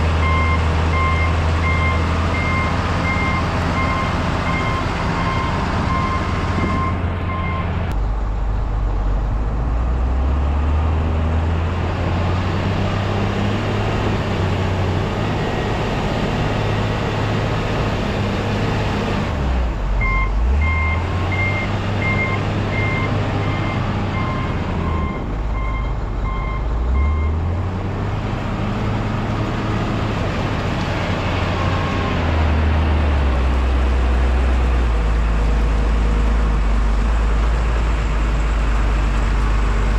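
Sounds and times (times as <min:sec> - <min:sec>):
truck engine running: 0:00.0 - 0:39.9
reversing alarm beeping: 0:00.2 - 0:07.7.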